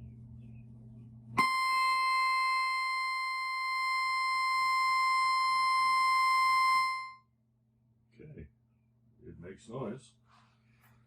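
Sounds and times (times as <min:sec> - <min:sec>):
synthesizer droning high note: 0:01.4 - 0:07.2.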